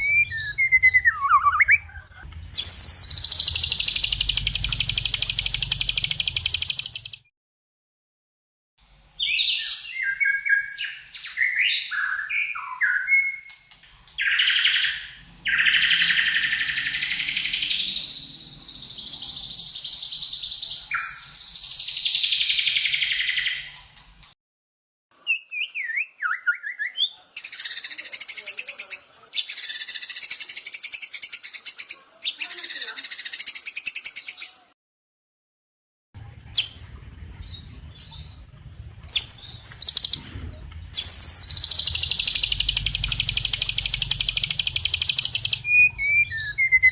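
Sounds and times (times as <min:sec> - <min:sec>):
songbird chirps and whistles: 0:00.0 - 0:02.0, 0:02.6 - 0:07.3, 0:09.2 - 0:23.8, 0:25.2 - 0:28.4, 0:39.1 - 0:40.2, 0:40.9 - 0:46.9.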